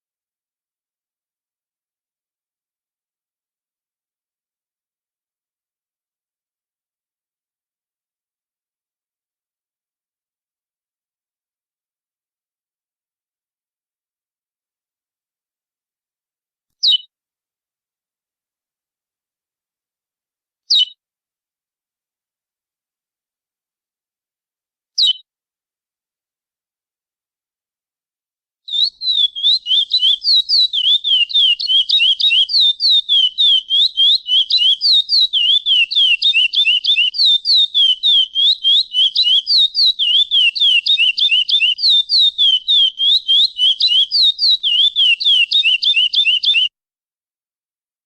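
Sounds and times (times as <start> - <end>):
finch singing whistled notes: 20.7 - 21.0, 25.0 - 25.2, 28.7 - 46.7.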